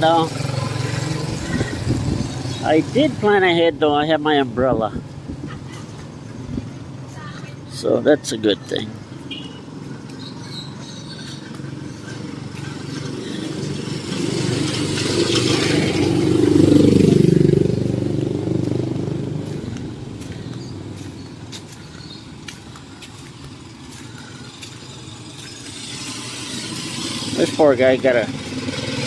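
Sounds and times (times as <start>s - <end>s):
vehicle driving past: 0.0s - 3.3s, 9.2s - 29.0s.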